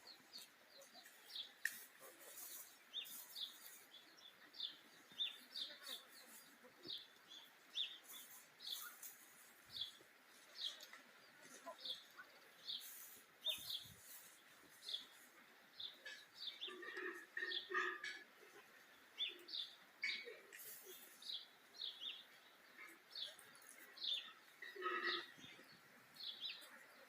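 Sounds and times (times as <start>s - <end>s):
small bird chirping: 0.0s - 17.8s.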